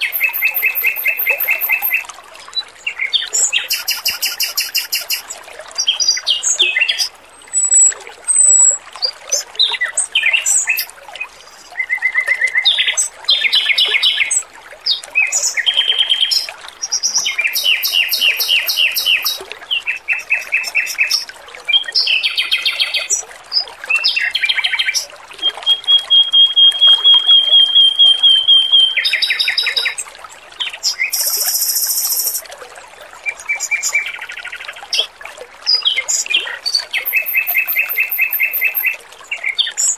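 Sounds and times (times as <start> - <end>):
bird singing trills: 0.0 - 2.0, 6.9 - 8.8, 24.6 - 30.0, 30.8 - 32.4, 37.0 - 39.0
water trickling: 0.0 - 39.9.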